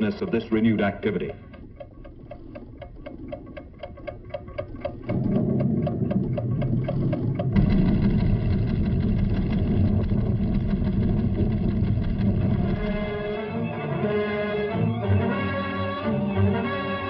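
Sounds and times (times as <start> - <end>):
deep steady rumble: 0.0 - 14.0
regular ticking: 0.0 - 17.0
held orchestral chords: 12.8 - 17.0.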